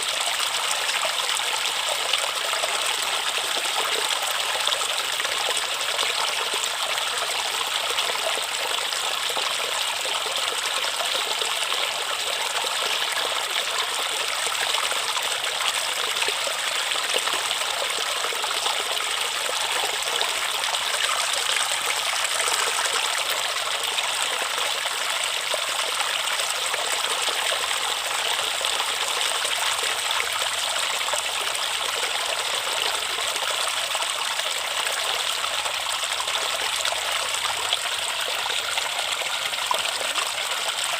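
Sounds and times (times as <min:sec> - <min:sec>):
river water flowing: 0:00.0 - 0:40.9.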